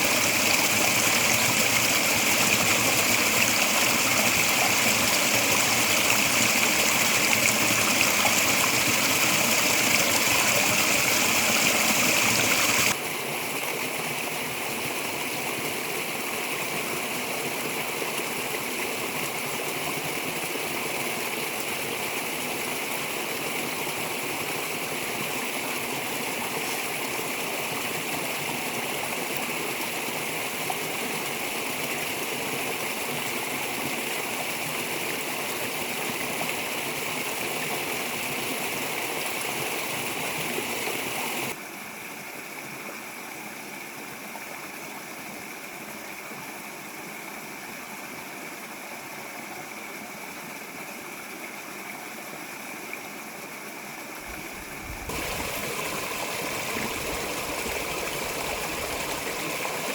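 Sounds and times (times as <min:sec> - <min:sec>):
steady rushing noise with hiss: 0:54.3 - 0:59.9.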